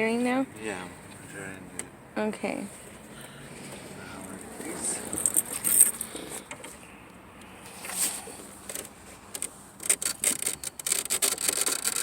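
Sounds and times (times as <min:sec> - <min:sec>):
rustling of wires: 0:02.6 - 0:12.0.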